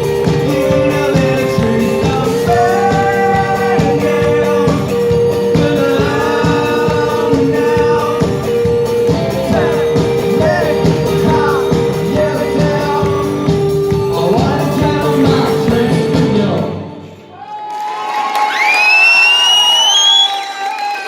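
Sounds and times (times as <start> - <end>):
steady drum beat: 0.0 - 16.8
live band playing: 0.0 - 17.4
person singing: 0.0 - 17.6.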